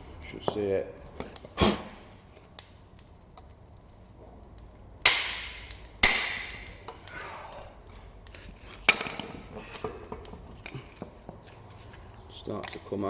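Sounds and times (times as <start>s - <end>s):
hammer striking metal: 5.1s - 6.7s.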